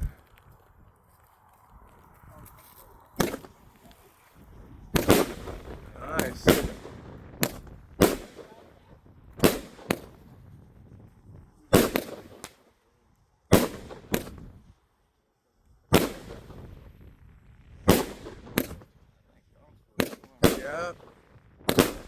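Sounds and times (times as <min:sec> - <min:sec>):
firework bangs: 0:03.2 - 0:03.9, 0:04.8 - 0:12.7, 0:13.5 - 0:14.7, 0:15.9 - 0:17.2, 0:17.8 - 0:19.0, 0:20.0 - 0:22.0.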